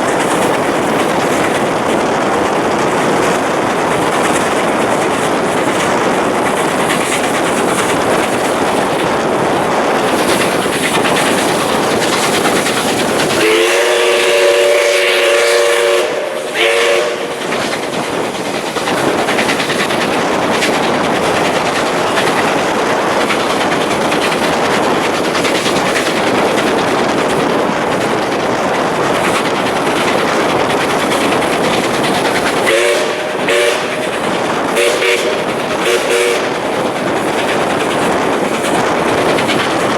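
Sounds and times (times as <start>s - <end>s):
steam train running: 0.0s - 39.9s
steam train whistle chord: 13.4s - 17.4s, 32.7s - 33.9s.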